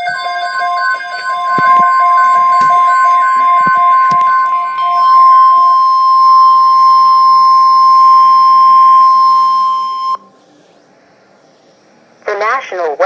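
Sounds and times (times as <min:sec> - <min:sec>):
two-note electronic beeping: 0:00.0 - 0:10.3
steady high alarm tone: 0:00.0 - 0:10.5.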